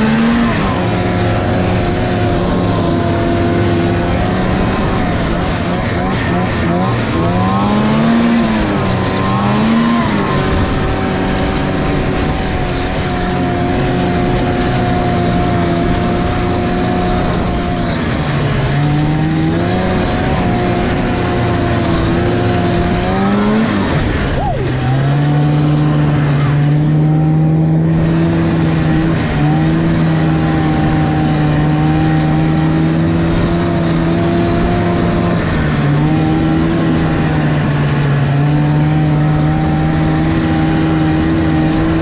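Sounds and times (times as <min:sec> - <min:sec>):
snowmobile engine revving: 0:00.0 - 0:42.0.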